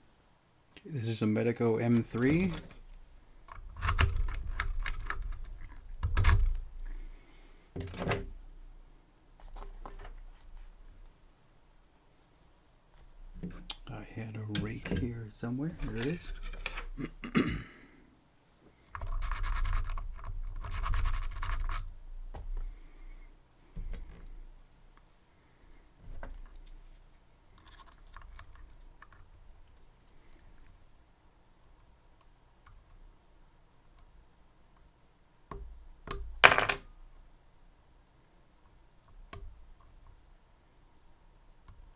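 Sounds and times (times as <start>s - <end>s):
pick ticking against pins: 1.7s - 7.0s, 12.9s - 17.7s
lock pick scraping in keyway: 1.9s - 6.8s, 7.7s - 8.4s, 14.5s - 15.1s, 15.7s - 17.0s, 18.9s - 21.9s.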